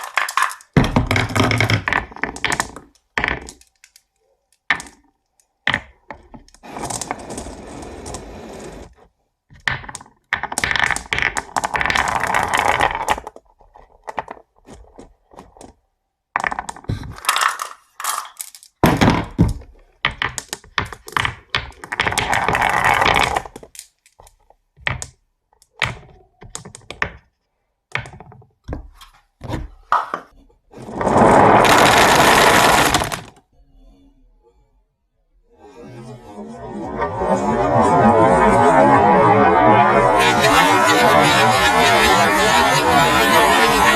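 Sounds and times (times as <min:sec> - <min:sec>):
marbles rolling rattle: 0:00.0 - 0:04.0, 0:06.6 - 0:08.9, 0:09.8 - 0:13.4, 0:22.0 - 0:23.6, 0:30.9 - 0:33.4, 0:36.8 - 0:43.9
marbles clicking on wooden track: 0:00.0 - 0:15.8, 0:16.4 - 0:27.3, 0:31.0 - 0:33.4, 0:36.9 - 0:43.9.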